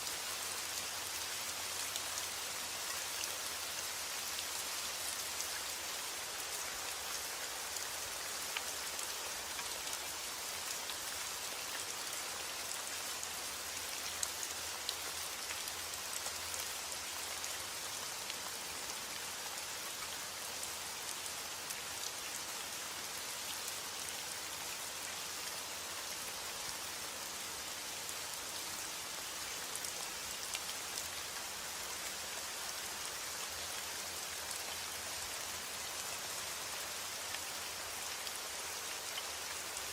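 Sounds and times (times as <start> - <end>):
heavy rain on a roof: 0.0 - 39.9.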